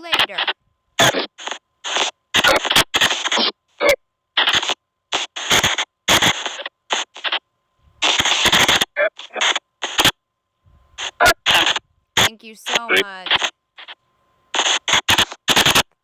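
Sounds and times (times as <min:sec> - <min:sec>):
choppy bursts of static: 0:00.0 - 0:03.5, 0:12.2 - 0:13.5.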